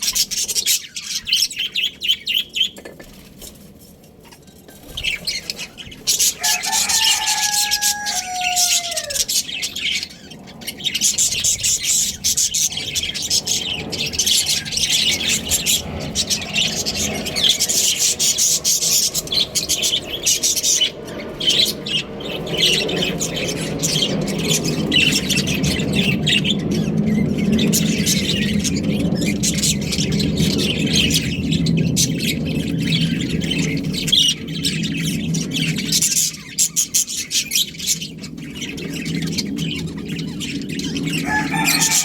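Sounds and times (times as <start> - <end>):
budgerigars chattering and squawking: 0.0 - 42.0.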